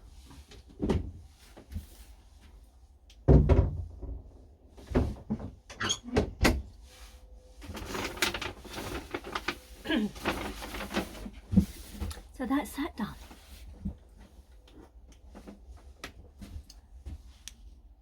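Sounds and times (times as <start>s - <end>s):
cupboard door thumping shut: 3.3s - 4.1s
rustling: 6.9s - 12.3s.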